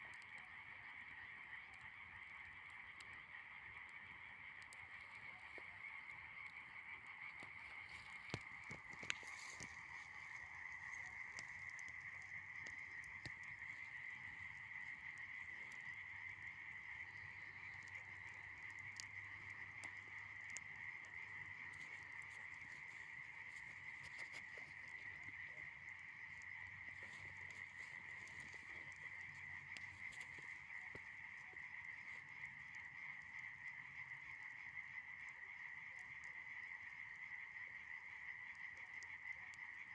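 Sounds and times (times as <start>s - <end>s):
frogs calling: 0.0s - 39.9s
bonfire pops: 7.3s - 32.8s.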